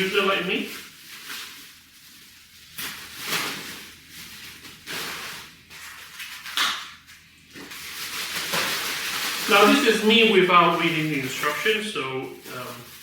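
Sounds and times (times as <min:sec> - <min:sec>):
plastic packaging rustling: 0:00.0 - 0:13.0.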